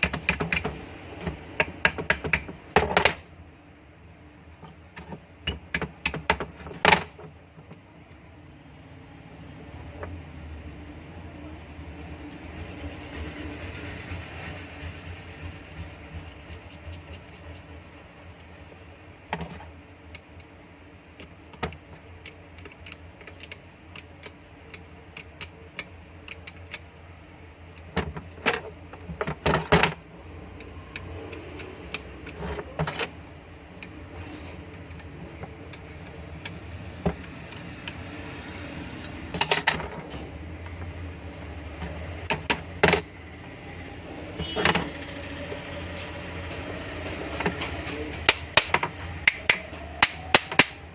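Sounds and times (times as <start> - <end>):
metal tools clinking: 39.3 - 40.2.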